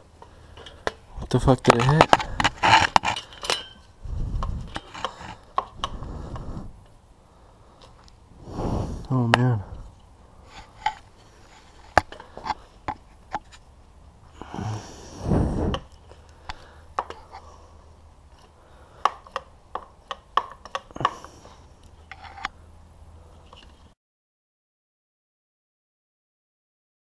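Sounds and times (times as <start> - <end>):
tools clicking and knocking: 1.6 - 6.0, 18.4 - 21.3.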